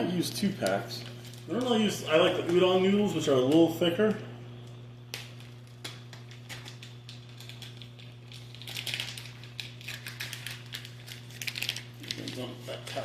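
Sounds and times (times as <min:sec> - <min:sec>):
steady low hum: 0:00.0 - 0:13.0
plastic packet crinkling: 0:05.1 - 0:13.0.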